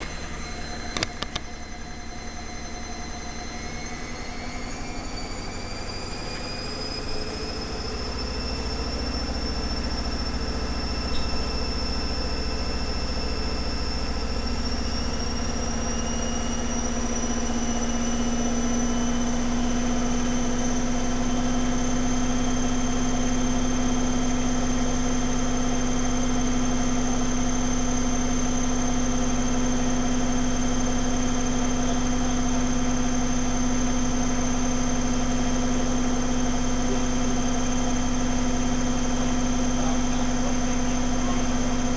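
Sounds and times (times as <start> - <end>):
motor whine rising: 0.0 - 41.9
washing machine spinning: 0.0 - 41.9.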